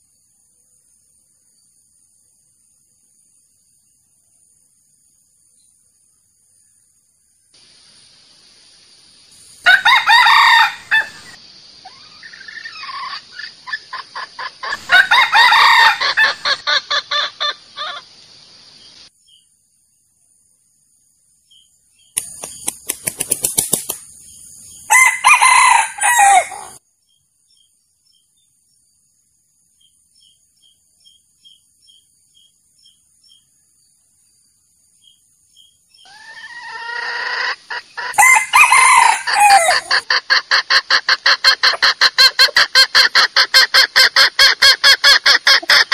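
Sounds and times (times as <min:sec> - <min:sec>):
steady hiss: 0:01.9 - 0:14.0, 0:17.3 - 0:21.3
rooster crowing: 0:09.6 - 0:11.4, 0:14.7 - 0:16.7, 0:24.9 - 0:26.8, 0:36.1 - 0:40.1
rooster clucking: 0:09.7 - 0:18.1, 0:24.9 - 0:26.8, 0:36.1 - 0:45.9.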